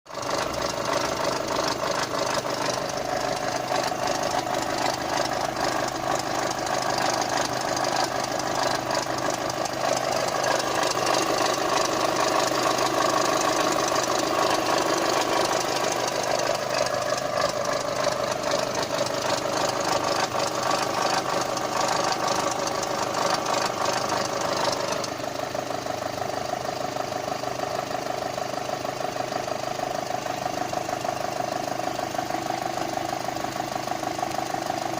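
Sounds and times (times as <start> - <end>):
car engine idling: 0.1 - 34.9
fast dense ticking: 0.2 - 25.2.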